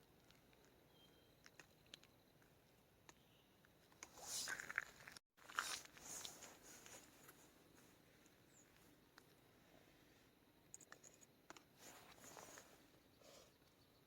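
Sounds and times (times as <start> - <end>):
close crunching and rustling: 4.0 - 7.9.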